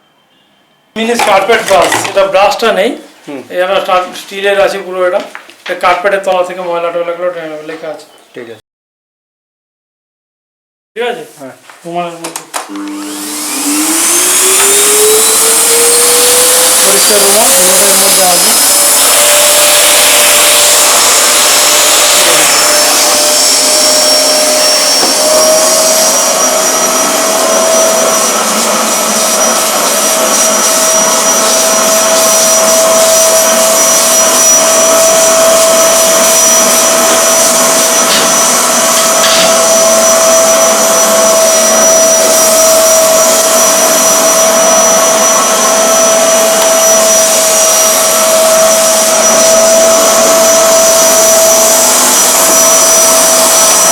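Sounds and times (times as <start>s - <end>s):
vacuum cleaner motor whine: 12.6s - 53.9s.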